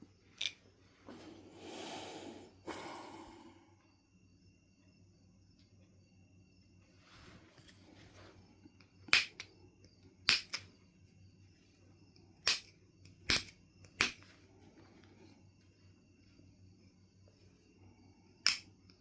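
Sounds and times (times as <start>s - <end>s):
flint knapping clicks: 9.0s - 9.5s, 10.2s - 10.8s, 12.4s - 14.3s, 18.4s - 18.7s.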